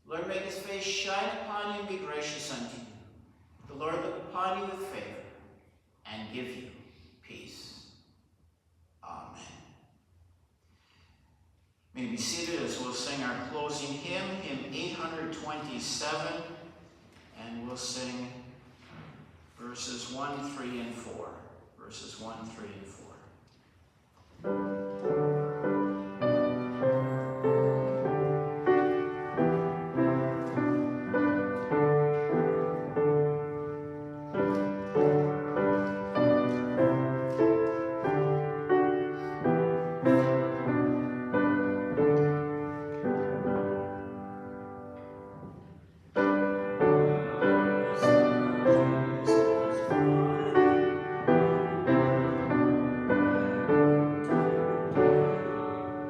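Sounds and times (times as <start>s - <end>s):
piano playing hymn tune: 12.0s - 16.8s, 24.4s - 56.0s.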